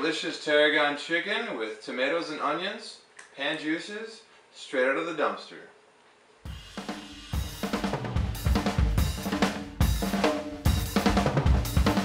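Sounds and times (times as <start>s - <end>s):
bass line: 6.5s - 12.0s
music with drum kit: 6.5s - 12.0s.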